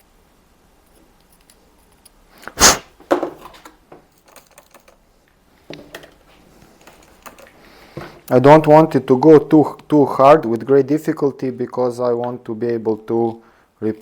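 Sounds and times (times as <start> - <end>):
small clicks and knocks: 3.4 - 7.6.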